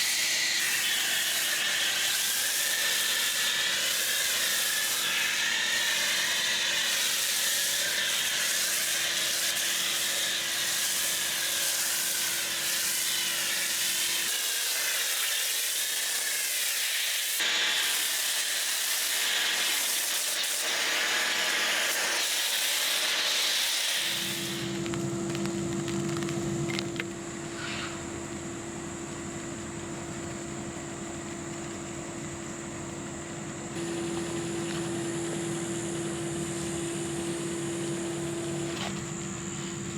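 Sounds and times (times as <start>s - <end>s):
low machine hum: 24.4s - 39.9s.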